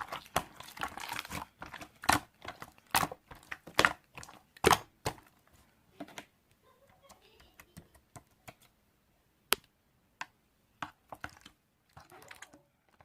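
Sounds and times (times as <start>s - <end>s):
sharp clicks and taps: 6.1s - 8.8s, 9.5s - 11.5s.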